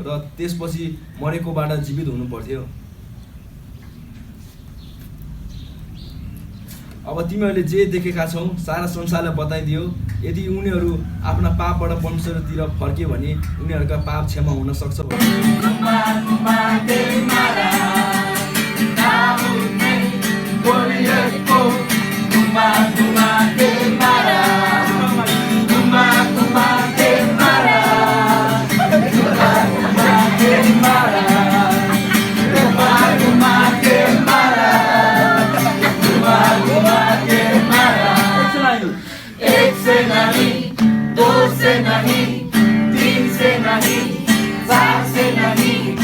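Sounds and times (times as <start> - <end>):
strummed guitar: 15.0 - 46.0
person singing: 15.1 - 46.0.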